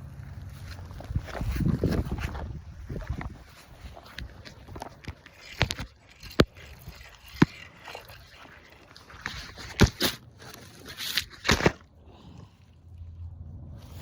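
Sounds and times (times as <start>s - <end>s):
fishing tackle clicks and knocks: 2.9s - 11.8s.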